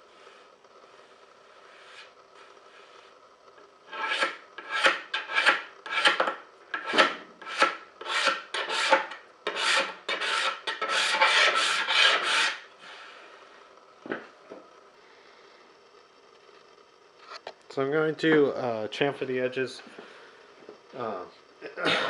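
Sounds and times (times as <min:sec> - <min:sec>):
hand tool scraping wood: 0:03.9 - 0:12.6.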